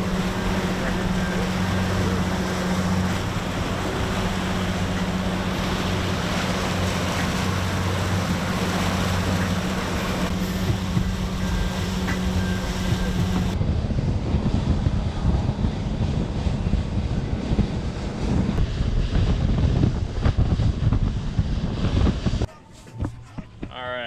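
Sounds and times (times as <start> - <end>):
water rushing: 0.0 - 13.6
boat engine humming: 0.0 - 13.8
wind: 0.0 - 24.0.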